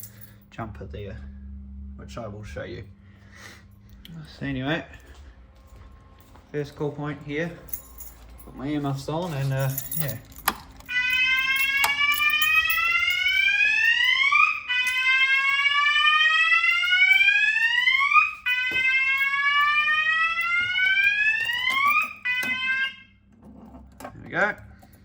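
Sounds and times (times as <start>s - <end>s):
steady alarm tone: 0.0s - 23.3s
fire alarm rising sweep tone: 1.1s - 7.8s, 10.8s - 23.3s.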